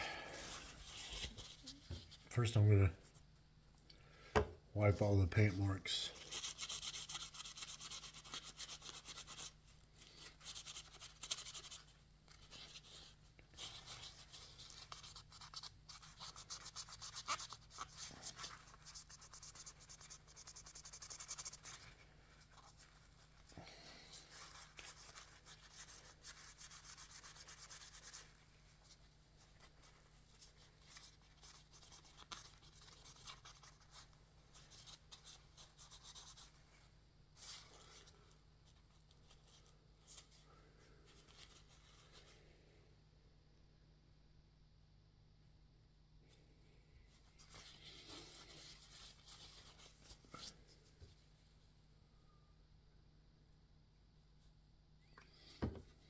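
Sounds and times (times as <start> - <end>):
rubbing and scratching on plastic: 0.3 - 3.2, 6.1 - 40.4, 47.1 - 51.6.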